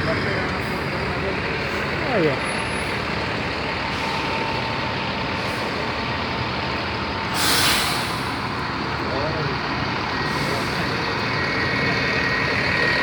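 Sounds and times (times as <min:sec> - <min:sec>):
heavy traffic engines running: 0:00.0 - 0:13.0
air brake hiss: 0:07.3 - 0:08.4.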